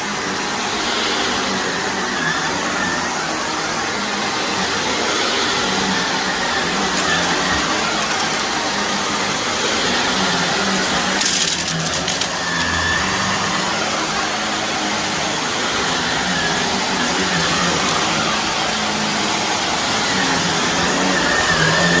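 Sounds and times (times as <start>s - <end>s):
vacuum cleaner running over carpet: 0.0s - 22.0s
crackling debris crunch: 7.0s - 8.7s, 11.0s - 12.9s.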